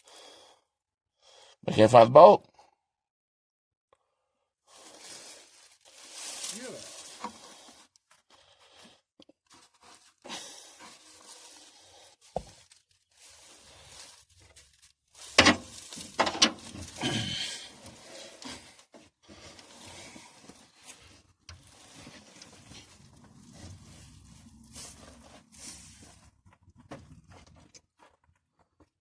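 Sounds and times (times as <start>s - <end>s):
metal knocks and clanks: 15.4s - 16.9s.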